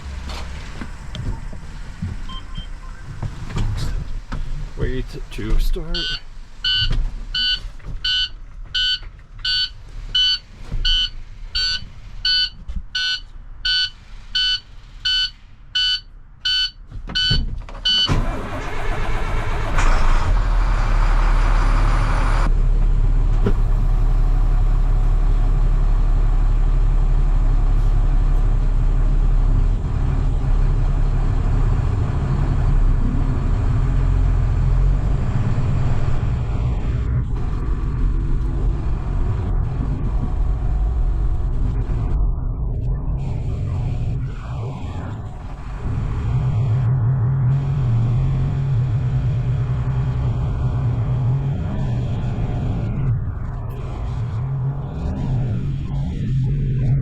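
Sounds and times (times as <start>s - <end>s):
dashboard warning chime beeping: 2.3s - 3.1s, 5.1s - 18.2s
diesel engine idling: 18.1s - 41.3s.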